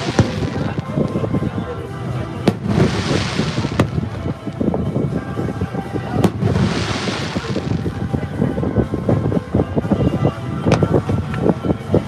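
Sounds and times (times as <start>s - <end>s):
firework bangs: 0.0s - 1.0s, 2.5s - 4.8s, 6.2s - 8.6s
crackling hiss: 0.0s - 1.1s, 2.5s - 4.8s, 6.2s - 8.3s.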